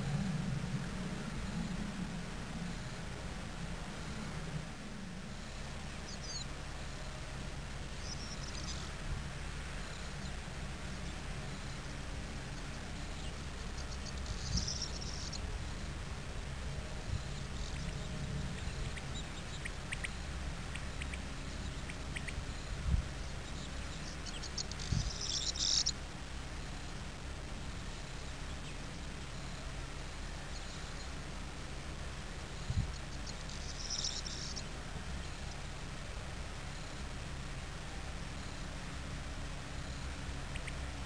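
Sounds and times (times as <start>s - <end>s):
low background rumble: 0.0s - 41.0s
bird song phrases: 5.4s - 7.1s, 7.9s - 8.9s, 17.0s - 26.0s
sharp ticking bird notes: 7.8s - 9.0s, 9.7s - 16.0s, 16.8s - 27.0s, 32.3s - 35.8s, 39.7s - 41.0s.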